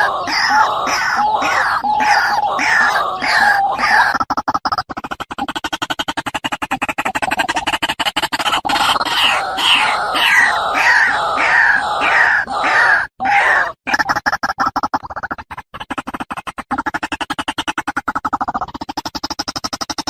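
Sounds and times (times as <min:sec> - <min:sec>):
waterhen calling: 0:00.0 - 0:04.1, 0:08.7 - 0:13.8.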